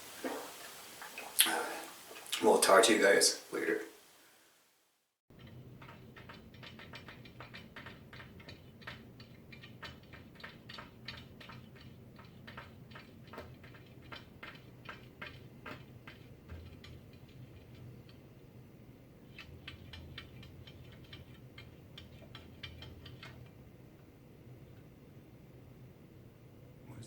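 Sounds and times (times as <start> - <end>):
rapid light clicking: 5.4 - 24.1
faint low hum: 5.4 - 27.0.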